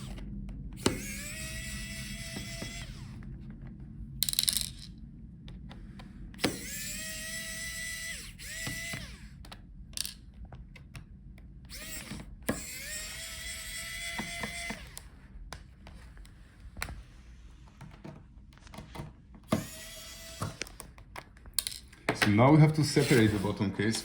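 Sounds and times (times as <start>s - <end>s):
electric screwdriver whining: 0.0s - 3.4s, 6.3s - 10.2s, 11.6s - 15.3s, 19.4s - 21.2s, 22.8s - 24.0s.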